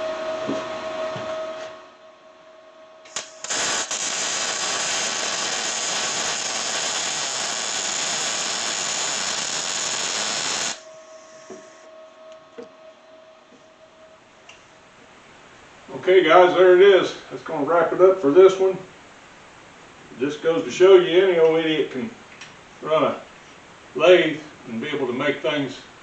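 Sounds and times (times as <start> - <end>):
welder click: 3.1 - 10.8
welding arc crackling: 3.1 - 10.8.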